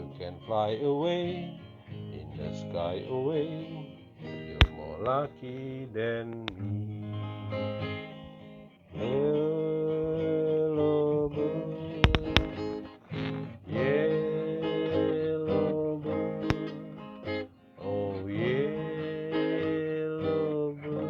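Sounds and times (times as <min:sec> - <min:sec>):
acoustic guitar playing: 0:00.0 - 0:21.0
sharp clicks: 0:04.4 - 0:05.7, 0:06.3 - 0:06.8, 0:12.0 - 0:13.4, 0:16.4 - 0:16.9.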